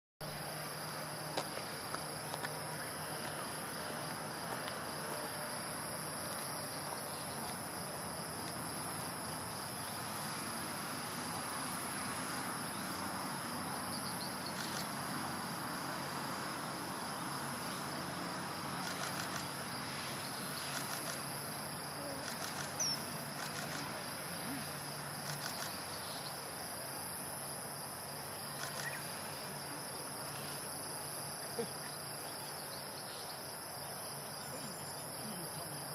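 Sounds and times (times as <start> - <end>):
outdoor hiss: 0.2 - 34.4
insect trilling: 28.6 - 29.9.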